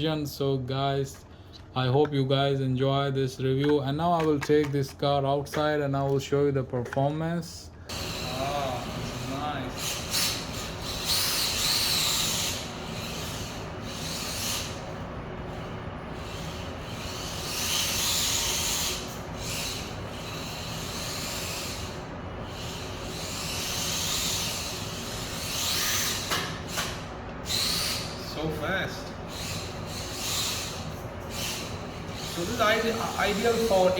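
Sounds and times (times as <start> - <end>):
toy car electric motor whirring: 7.9 - 28.2, 29.3 - 33.9.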